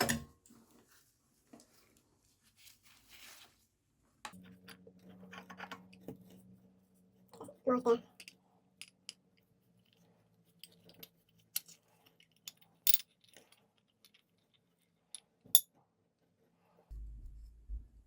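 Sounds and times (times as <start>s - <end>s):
small metal parts clinking: 10.6s - 15.7s.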